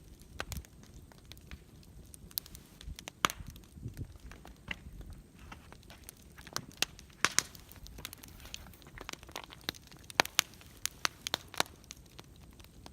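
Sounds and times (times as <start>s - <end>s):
campfire crackling: 0.0s - 12.9s.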